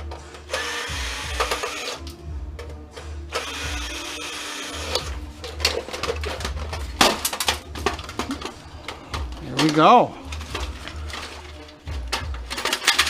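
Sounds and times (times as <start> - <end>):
power drill running: 0.5 - 2.0, 3.3 - 5.2
metal panels clicking and knocking: 4.9 - 13.0.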